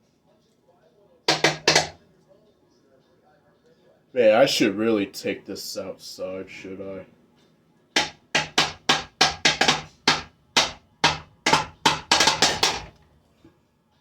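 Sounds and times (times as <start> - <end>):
blows banging on ceiling fan: 8.0 - 13.0.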